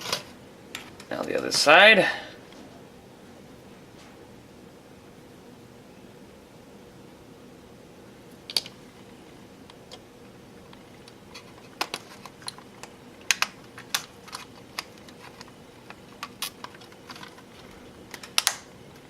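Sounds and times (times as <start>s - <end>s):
plastic parts clicking together: 10.7s - 18.7s.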